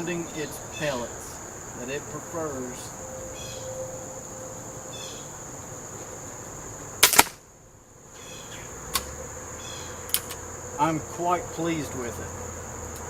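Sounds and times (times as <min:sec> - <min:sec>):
crickets chirring: 0:00.0 - 0:13.0
air pistol shot: 0:07.0 - 0:07.4.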